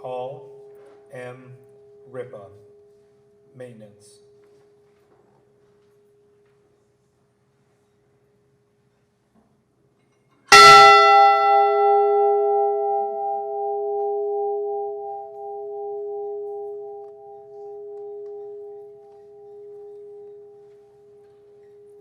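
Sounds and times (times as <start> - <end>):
large bell ringing: 10.5 - 22.0.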